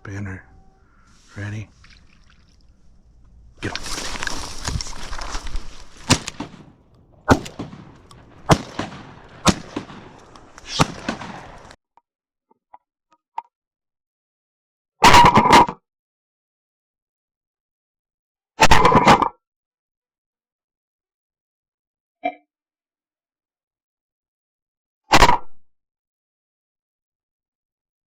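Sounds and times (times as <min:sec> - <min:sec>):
shotgun shots: 0:03.6 - 0:11.8
loud burst: 0:05.9 - 0:11.8.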